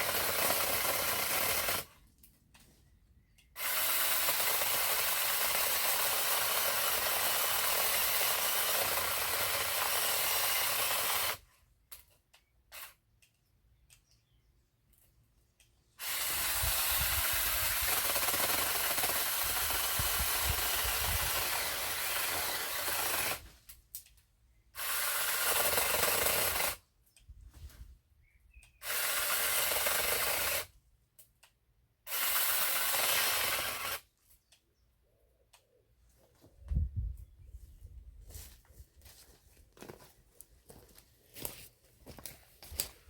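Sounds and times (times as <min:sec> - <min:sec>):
cordless chainsaw cutting wood: 0:00.0 - 0:01.9, 0:03.5 - 0:11.4, 0:16.0 - 0:23.5, 0:24.7 - 0:26.8, 0:28.7 - 0:30.8, 0:32.0 - 0:34.1.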